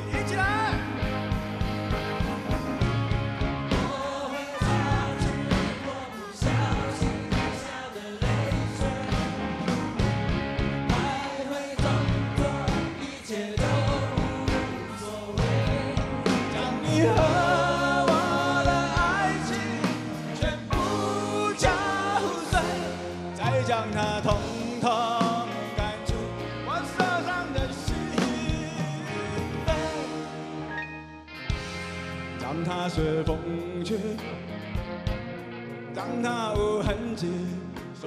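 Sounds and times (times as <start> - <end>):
live rock band with singing: 0.0 - 38.0.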